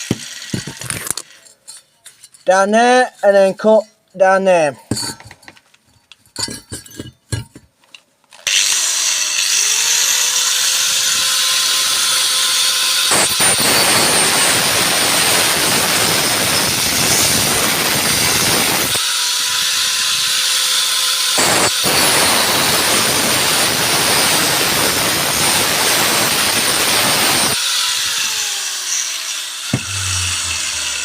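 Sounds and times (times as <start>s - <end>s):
angle grinder cutting metal: 0.0s - 1.8s, 8.4s - 31.0s.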